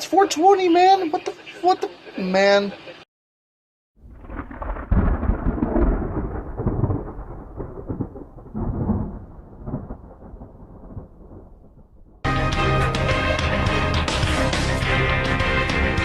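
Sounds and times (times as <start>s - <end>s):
deep rolling rumble: 4.0s - 12.3s.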